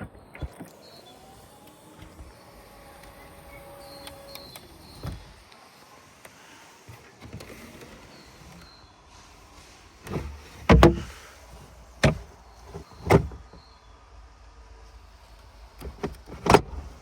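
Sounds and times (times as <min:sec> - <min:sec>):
small electric motor whirring: 0:00.6 - 0:06.4.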